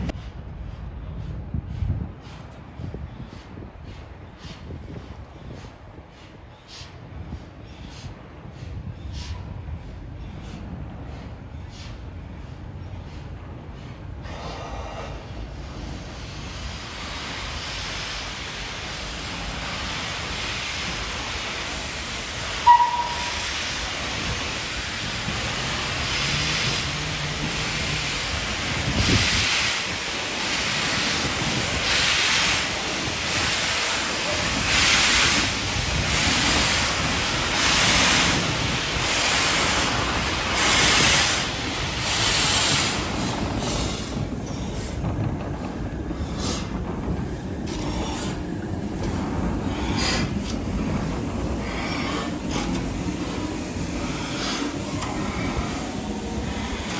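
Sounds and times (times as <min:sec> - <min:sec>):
locomotive exhaust beats: 0:00.0 - 0:56.9
steam locomotive hiss: 0:00.0 - 0:56.9
high-pitched whistle toot: 0:22.6 - 0:23.5.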